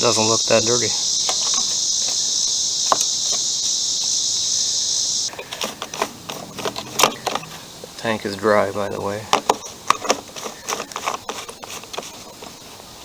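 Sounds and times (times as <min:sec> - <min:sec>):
high-pitched insect chorus: 0:00.0 - 0:13.0
light clicks and knocks: 0:05.3 - 0:12.6.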